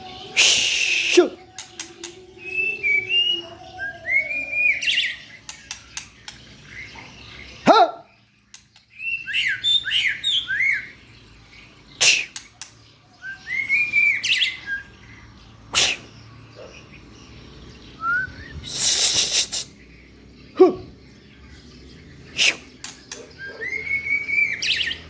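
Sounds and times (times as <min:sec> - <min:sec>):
bird singing whistled phrases: 0:00.2 - 0:05.5, 0:09.0 - 0:10.9, 0:13.2 - 0:15.0, 0:18.0 - 0:19.6, 0:23.4 - 0:25.0.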